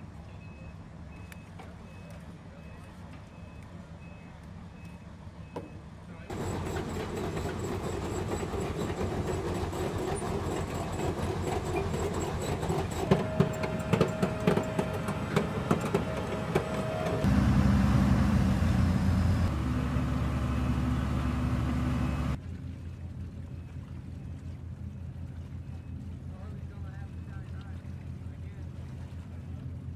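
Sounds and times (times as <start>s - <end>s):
tank engines running: 0.1s - 22.4s.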